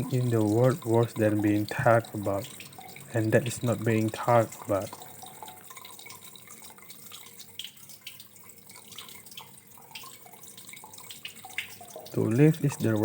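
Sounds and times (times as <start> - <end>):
water drips and splashes: 0.0 - 13.0
water trickling: 0.0 - 13.0.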